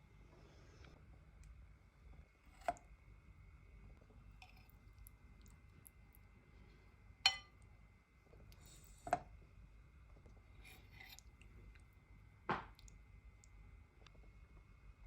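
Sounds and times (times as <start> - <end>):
faint steady hum: 0.0 - 15.0
kitchenware clinking: 7.3 - 7.6.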